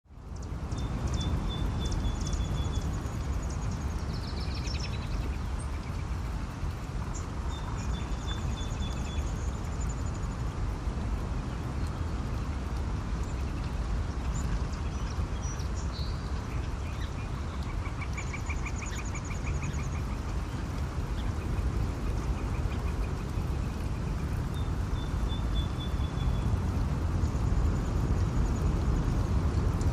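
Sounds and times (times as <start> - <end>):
small birds chirping: 0.2 - 10.3, 13.2 - 26.6.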